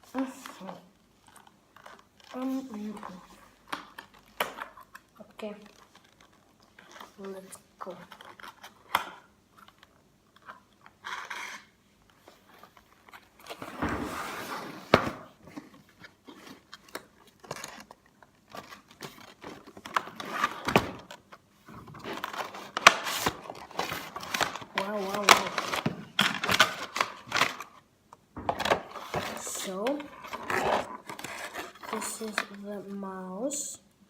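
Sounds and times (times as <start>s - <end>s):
packaging rustling: 1.1s - 32.8s
packaging clicks taps and scrapes: 15.5s - 27.7s.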